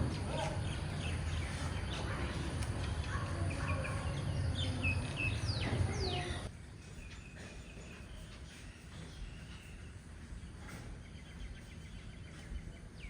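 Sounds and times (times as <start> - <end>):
low outdoor rumble: 0.0 - 6.5
small birds chirping: 0.0 - 13.0.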